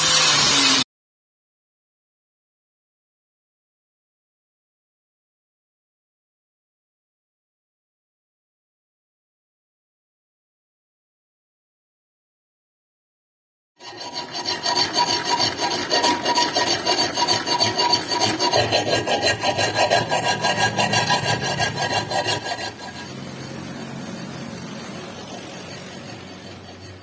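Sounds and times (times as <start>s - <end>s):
blade rasping strokes: 0.0s - 0.8s, 13.8s - 27.0s.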